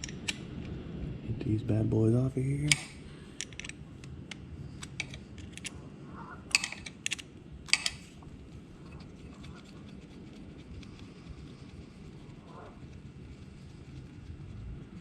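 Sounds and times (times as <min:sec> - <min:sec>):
hand tools clicking: 0:02.6 - 0:03.8, 0:06.5 - 0:08.0.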